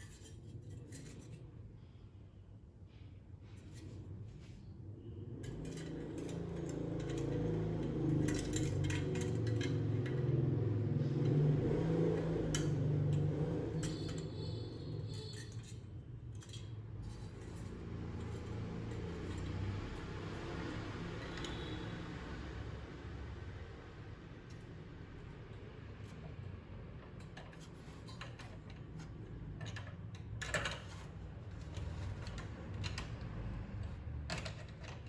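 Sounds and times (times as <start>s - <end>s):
small hard parts clinking: 5.4s - 11.8s, 12.4s - 19.6s.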